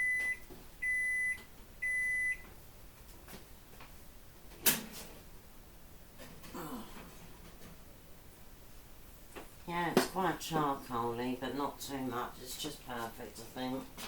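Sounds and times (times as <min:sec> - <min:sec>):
oven beeping: 0:00.0 - 0:02.5.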